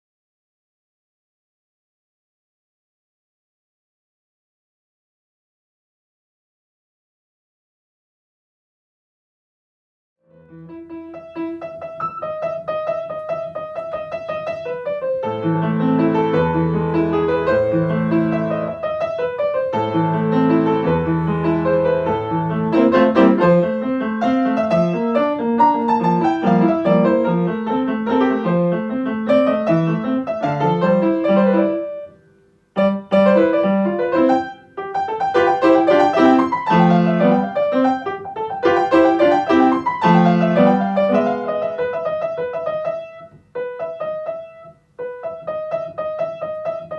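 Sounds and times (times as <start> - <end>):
solo piano playing: 10.3 - 46.9.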